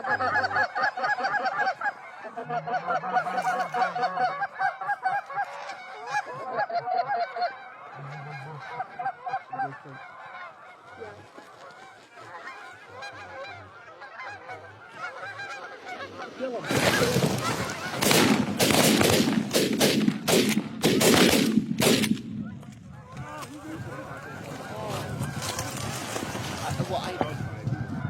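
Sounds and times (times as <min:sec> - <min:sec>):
geese honking: 0:00.0 - 0:28.0.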